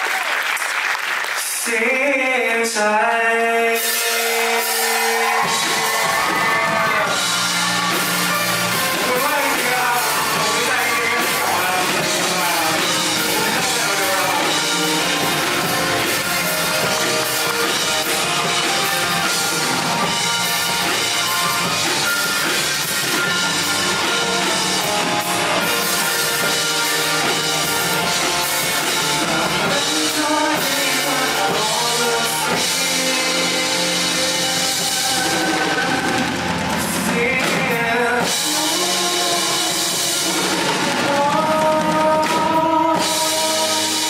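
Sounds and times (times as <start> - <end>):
live rock band playing: 2.7 - 44.0
bass and drums: 3.6 - 44.0
crowd shouting: 4.2 - 29.8.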